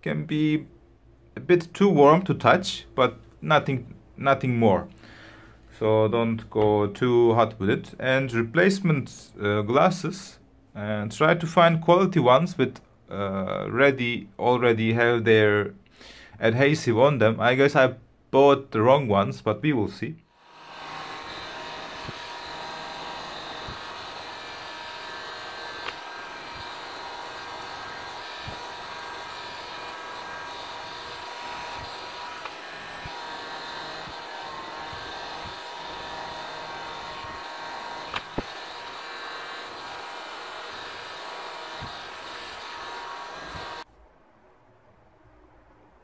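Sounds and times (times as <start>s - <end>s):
hot-air blower whirring: 20.4s - 43.9s.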